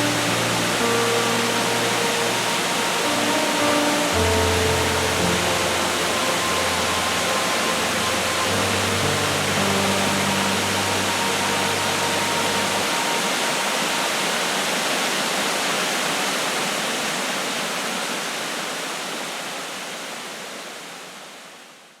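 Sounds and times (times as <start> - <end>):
background music: 0.0 - 14.6
waterfall rushing: 0.0 - 21.9.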